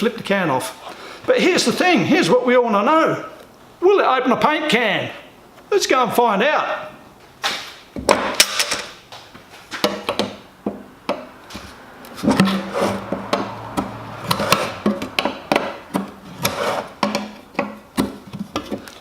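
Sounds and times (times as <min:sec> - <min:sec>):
opener prying metal paint can lid: 0:12.2 - 0:19.0.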